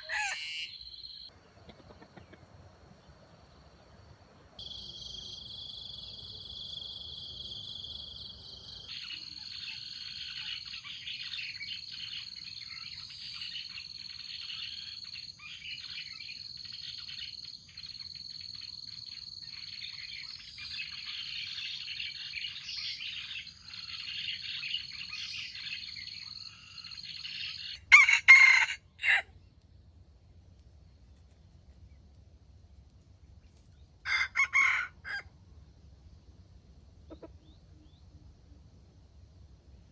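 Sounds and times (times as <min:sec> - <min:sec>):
rooster crowing: 0:00.0 - 0:01.2, 0:27.6 - 0:29.3, 0:34.1 - 0:35.3
small birds chirping: 0:00.0 - 0:27.9
high insect drone: 0:04.6 - 0:09.2.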